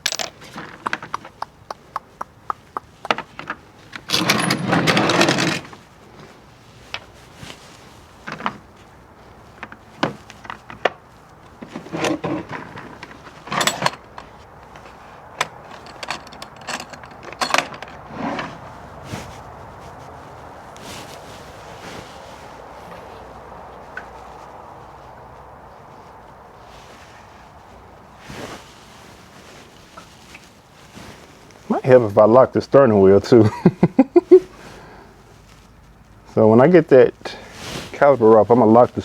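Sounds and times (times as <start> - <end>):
metal parts rattling: 0.0 - 1.0, 4.0 - 5.7, 13.4 - 14.3, 15.4 - 18.1
hand tools and metal parts clinking: 0.0 - 1.7, 2.4 - 5.8, 9.6 - 18.6.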